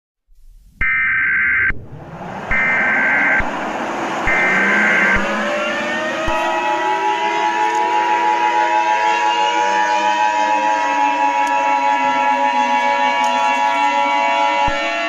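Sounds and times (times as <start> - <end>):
rushing noise: 1.0 - 8.5
digital data tone bursts: 2.5 - 3.5, 4.3 - 5.3
two-tone attention signal: 4.3 - 5.4.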